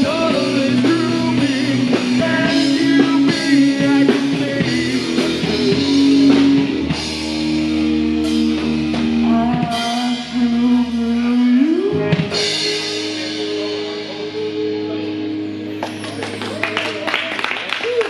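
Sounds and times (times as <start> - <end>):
drum kit with cymbal crashes: 0.0 - 10.7
bass guitar: 0.0 - 18.0
electric guitar chords: 0.0 - 18.0.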